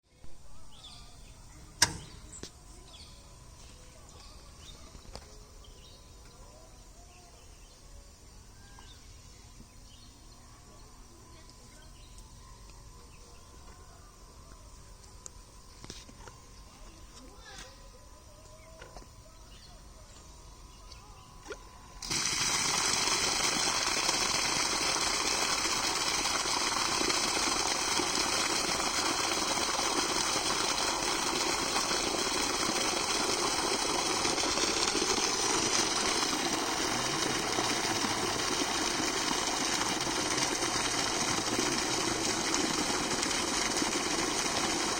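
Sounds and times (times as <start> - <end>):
water gushing from pipe: 22.0 - 44.9.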